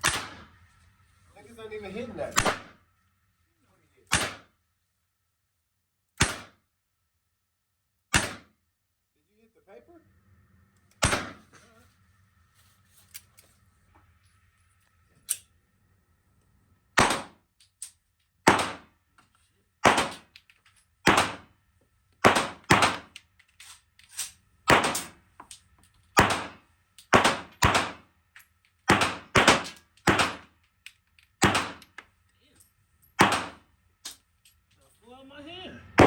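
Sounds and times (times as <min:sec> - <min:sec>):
gunshots indoors: 0:00.0 - 0:00.6, 0:02.3 - 0:02.8, 0:04.1 - 0:04.6, 0:06.2 - 0:06.6, 0:08.1 - 0:08.6, 0:11.0 - 0:11.4, 0:17.0 - 0:17.5, 0:18.4 - 0:19.0, 0:19.8 - 0:20.3, 0:21.0 - 0:21.6, 0:22.2 - 0:23.2, 0:24.7 - 0:25.2, 0:26.2 - 0:28.1, 0:28.8 - 0:30.6, 0:31.4 - 0:31.9, 0:33.2 - 0:34.2.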